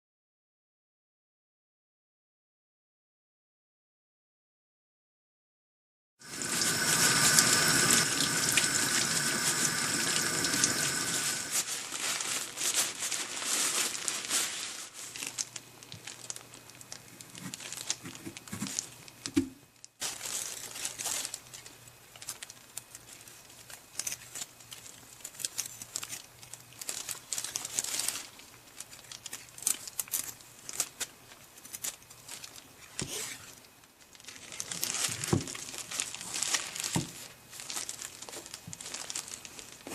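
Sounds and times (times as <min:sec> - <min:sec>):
kitchen tap running: 0:06.2 - 0:11.5
fruit rubbed with towel: 0:06.3 - 0:15.2.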